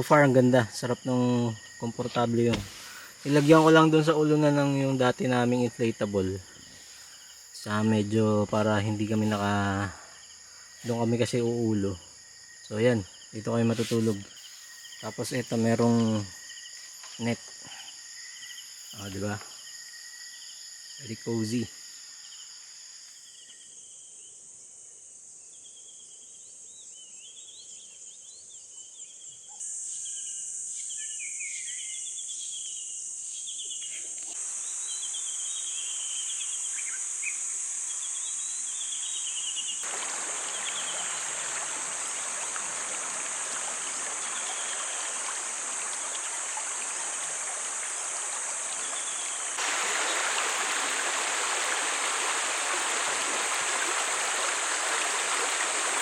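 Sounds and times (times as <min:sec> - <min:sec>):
insect chirps: 0:00.0 - 0:56.0
insects trilling: 0:00.0 - 0:56.0
river rushing: 0:39.8 - 0:56.0.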